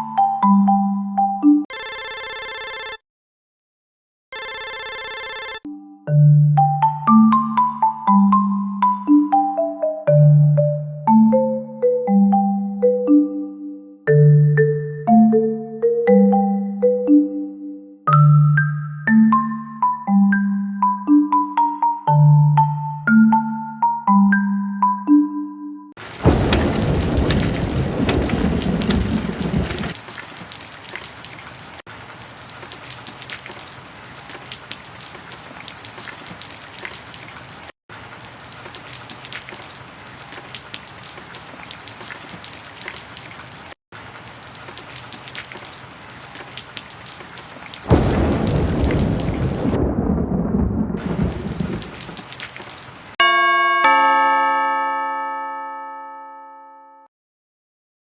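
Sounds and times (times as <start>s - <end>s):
thunder rolling: 26.0s - 30.0s, 47.9s - 52.4s
heavy rain falling: 26.0s - 53.2s
bell-like chime: 53.2s - 57.1s.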